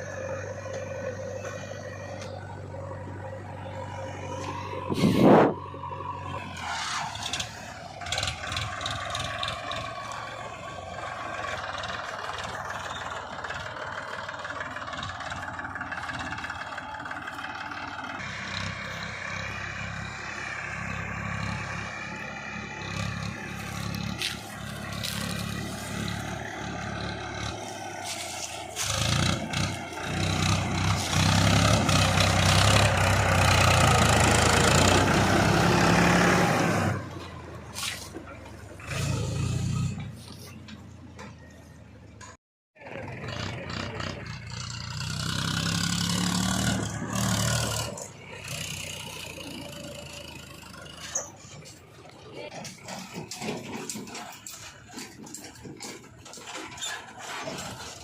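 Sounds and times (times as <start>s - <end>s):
diesel engines under load: 0.0s - 58.0s
clattering and scraping: 22.8s - 33.0s, 46.8s - 58.0s.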